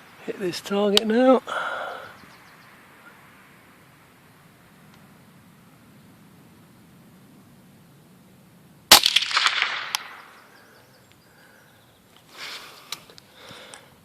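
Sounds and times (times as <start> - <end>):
rifle shot: 8.9 - 10.4.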